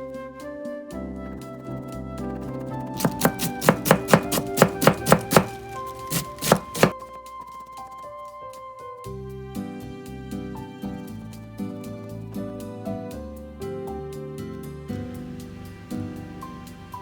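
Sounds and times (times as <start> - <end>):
gentle background music: 0.0 - 17.0
knife chopping on cutting board: 3.0 - 7.0.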